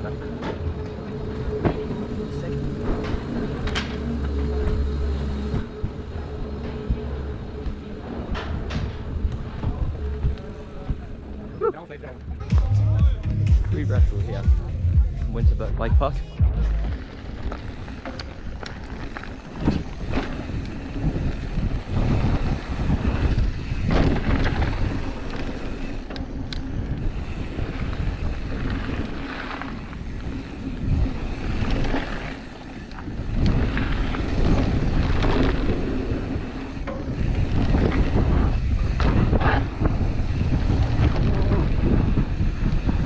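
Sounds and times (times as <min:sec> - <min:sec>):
wind buffeting microphone: 0:13.9 - 0:43.0
tyres rumbling over dirt: 0:16.4 - 0:43.0
bike knocks and rattles: 0:16.8 - 0:43.0.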